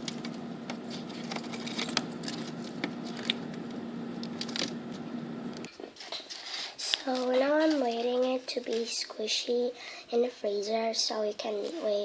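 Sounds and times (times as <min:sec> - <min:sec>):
clicks and rustles of handling: 0:00.0 - 0:05.0, 0:05.6 - 0:09.0
steady low hum: 0:00.0 - 0:05.7.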